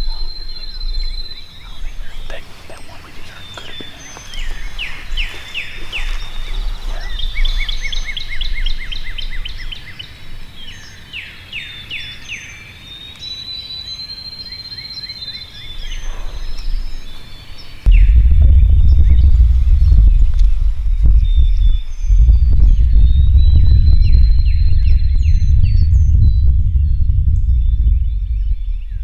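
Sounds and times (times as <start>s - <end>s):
loud low rumble: 0.0s - 2.4s, 17.9s - 29.0s
faint low rumble: 0.0s - 10.9s, 15.6s - 29.0s
songbirds singing: 0.0s - 29.0s.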